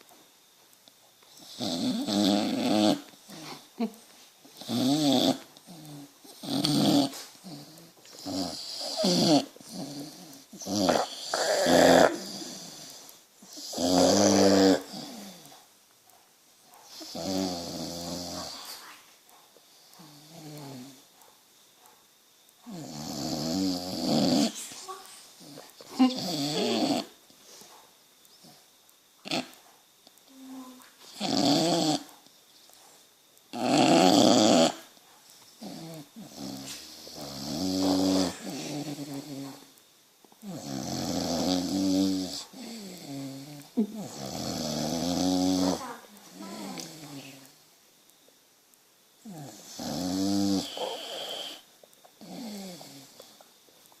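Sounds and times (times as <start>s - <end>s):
dog snoring: 1.3s - 3.6s, 4.5s - 15.6s, 16.8s - 18.9s, 19.7s - 21.1s, 22.6s - 24.7s, 25.4s - 27.2s, 28.4s - 29.7s, 30.3s - 32.2s, 33.5s - 34.9s, 35.6s - 39.7s, 40.4s - 47.5s, 49.2s - 53.5s.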